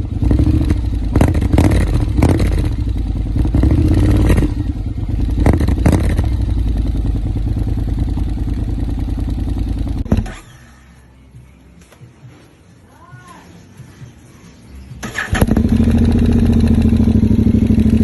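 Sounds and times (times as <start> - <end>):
motorcycle engine pulsing: 0.0 - 10.6, 15.0 - 18.0
exhaust cracks: 0.2 - 6.6, 15.0 - 18.0.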